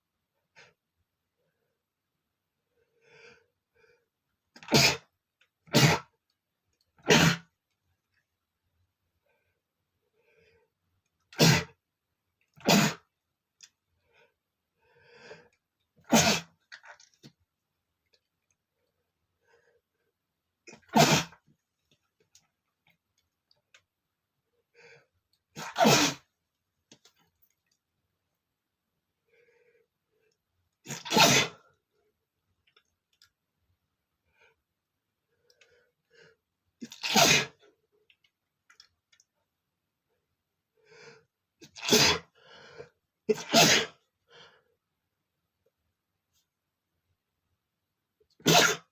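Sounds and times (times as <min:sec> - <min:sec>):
man sneezing: 0:05.7 - 0:06.1, 0:07.0 - 0:07.5, 0:11.4 - 0:11.7, 0:12.6 - 0:13.0, 0:16.1 - 0:16.5, 0:20.7 - 0:21.4, 0:25.6 - 0:26.2, 0:30.9 - 0:31.6, 0:36.9 - 0:37.6, 0:41.8 - 0:42.3, 0:43.3 - 0:44.0, 0:48.4 - 0:48.9.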